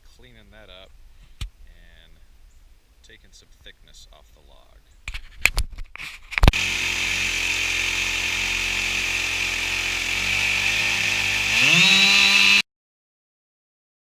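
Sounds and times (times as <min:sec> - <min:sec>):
chainsaw starting and revving: 0:06.4 - 0:12.6.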